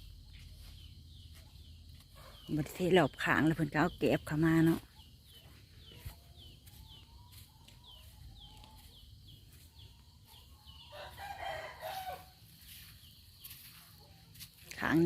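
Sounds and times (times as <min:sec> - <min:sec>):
rooster crowing: 0:10.9 - 0:12.4.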